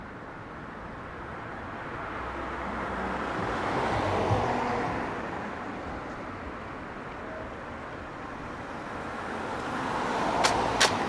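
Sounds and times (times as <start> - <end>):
low traffic hum: 0.0 - 11.0
car passing by: 1.9 - 6.4, 8.4 - 11.0.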